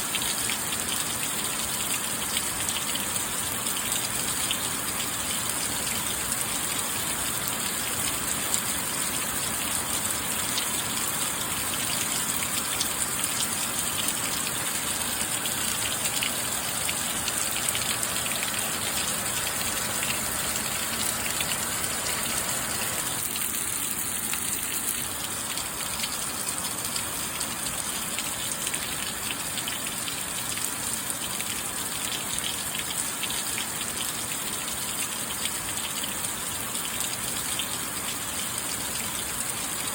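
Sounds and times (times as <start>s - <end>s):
steady rain: 0.0s - 39.9s
raindrops ticking: 7.3s - 38.8s.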